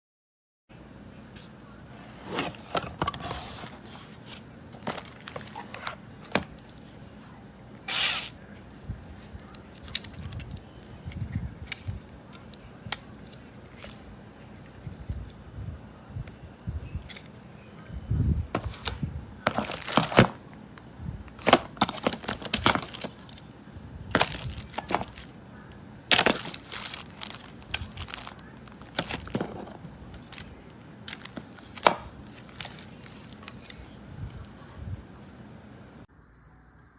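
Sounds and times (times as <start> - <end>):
clicks and knocks of hard objects: 2.3 - 6.8, 18.6 - 20.5, 21.3 - 23.4, 24.1 - 25.3, 26.1 - 33.8.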